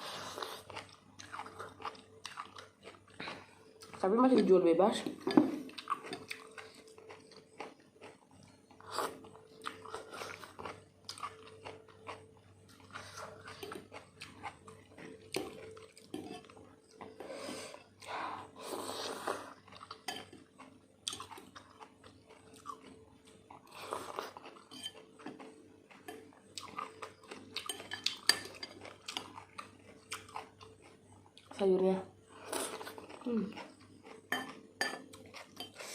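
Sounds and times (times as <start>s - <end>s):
close chewing: 0.0s - 4.6s, 5.5s - 31.6s, 32.3s - 35.9s.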